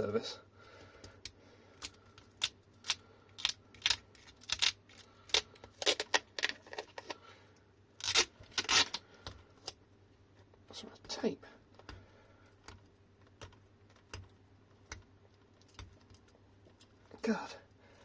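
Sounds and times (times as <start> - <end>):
tape being torn off: 2.3 - 7.1, 8.0 - 9.0.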